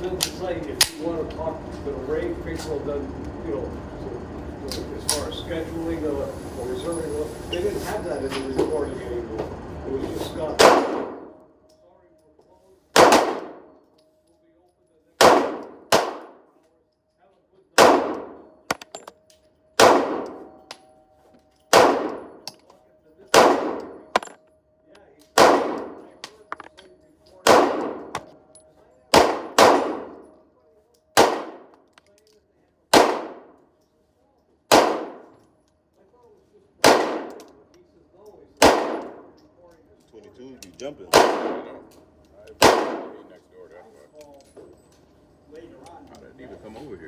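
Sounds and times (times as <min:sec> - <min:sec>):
pistol shots echoing: 0:10.6 - 0:11.4, 0:12.9 - 0:13.8, 0:15.2 - 0:16.4, 0:17.8 - 0:19.1, 0:19.8 - 0:20.7, 0:21.7 - 0:22.6, 0:23.3 - 0:24.5, 0:25.4 - 0:26.8, 0:27.4 - 0:28.5, 0:29.1 - 0:30.3, 0:31.2 - 0:32.0, 0:32.9 - 0:33.6, 0:34.7 - 0:35.4, 0:36.8 - 0:37.6, 0:38.6 - 0:39.4, 0:41.1 - 0:41.9, 0:42.6 - 0:43.3.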